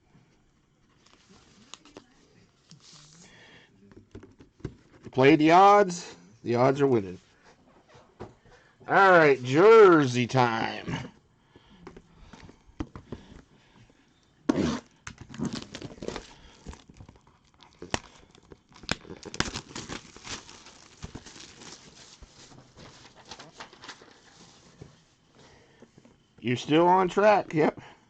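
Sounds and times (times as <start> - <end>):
plastic packaging tearing and crinkling: 14.7 - 24.4.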